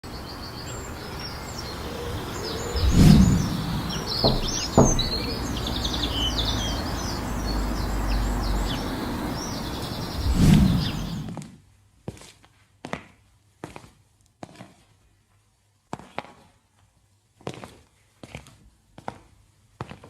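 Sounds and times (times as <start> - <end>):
birds chirping and trilling: 0.1 - 11.3
dull low thump: 2.4 - 6.0
short knocks: 2.4 - 6.1.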